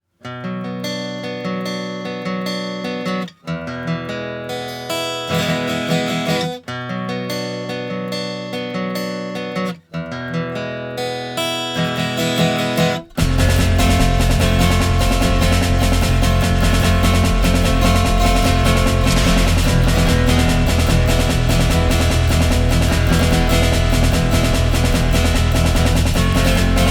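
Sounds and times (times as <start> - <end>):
strummed guitar chords: 0.3 - 26.9
heavy bass: 13.2 - 26.9.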